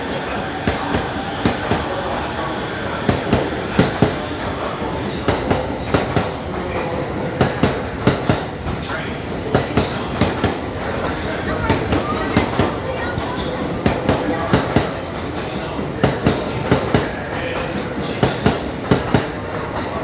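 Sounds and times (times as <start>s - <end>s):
electric train running: 0.0s - 20.0s.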